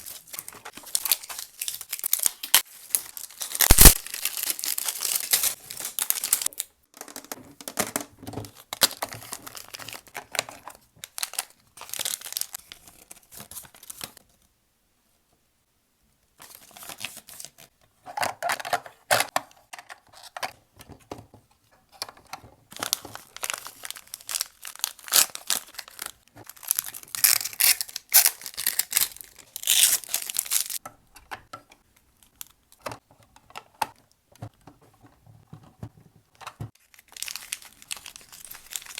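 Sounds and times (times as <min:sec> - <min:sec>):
packaging tearing and crinkling: 0:00.0 - 0:06.7, 0:08.6 - 0:14.2, 0:22.7 - 0:30.8, 0:36.8 - 0:38.9.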